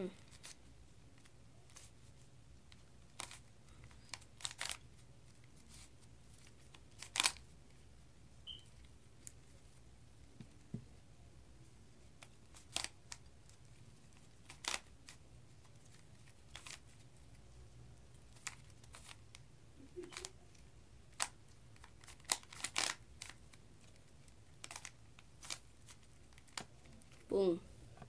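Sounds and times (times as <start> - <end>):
puzzle cube plastic clicks: 3.1 - 4.9, 6.4 - 7.4, 12.2 - 13.3, 14.4 - 15.2, 16.5 - 16.8, 20.0 - 20.4, 21.1 - 23.6, 24.5 - 27.2.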